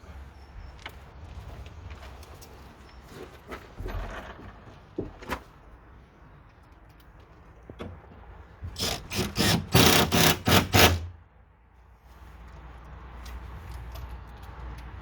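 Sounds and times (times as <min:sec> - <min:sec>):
power screwdriver driving screws: 0:08.8 - 0:11.1.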